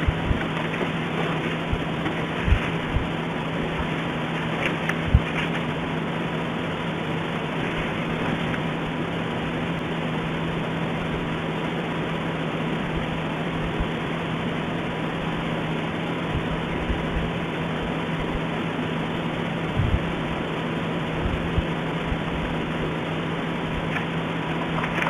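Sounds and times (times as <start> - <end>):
low hum: 0.0 - 25.0
steady rushing noise: 0.0 - 25.0
faint low thumps: 19.8 - 20.2.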